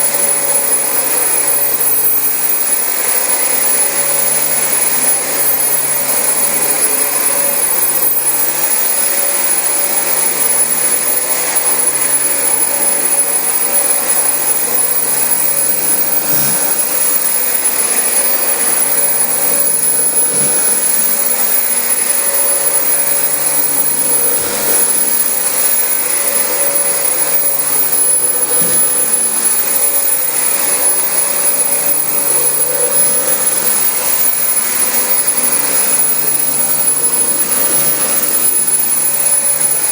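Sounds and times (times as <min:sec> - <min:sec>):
vacuum cleaner running: 0:00.0 - 0:39.9.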